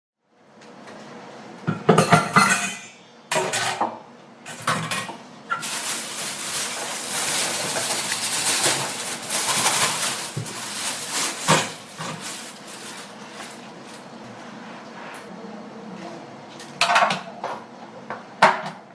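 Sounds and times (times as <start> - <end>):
pots and pans clattering: 1.7 - 13.7, 16.7 - 17.7.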